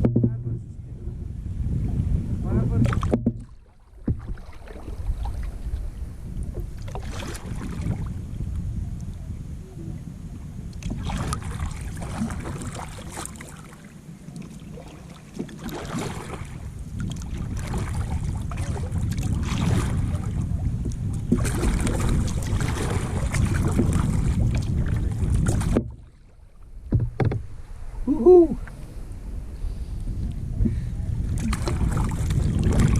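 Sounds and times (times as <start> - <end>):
wind rumbling on microphone: 0.0 - 32.9
paddle splashing water: 2.6 - 8.2, 10.8 - 32.9.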